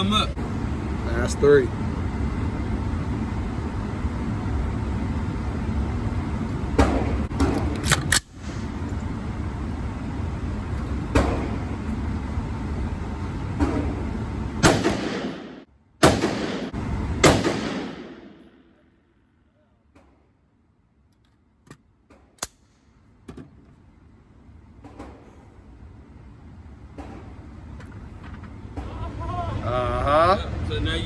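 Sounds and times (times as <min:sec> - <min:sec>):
gunshots: 0:14.6 - 0:18.6.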